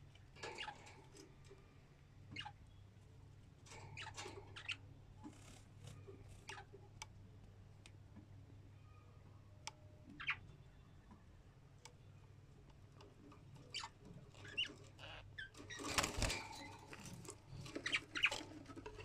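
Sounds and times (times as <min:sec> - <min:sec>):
budgerigars chirping: 0:13.7 - 0:15.5
scratching and rustling: 0:14.0 - 0:19.0.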